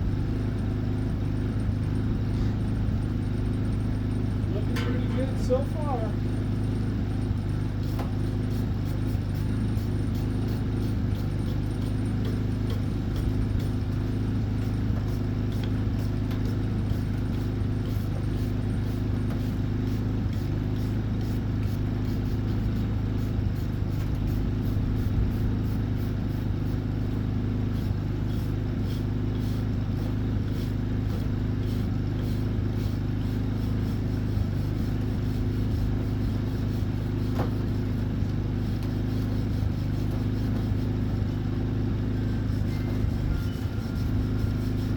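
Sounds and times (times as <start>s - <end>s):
welder humming: 0.3s - 44.9s.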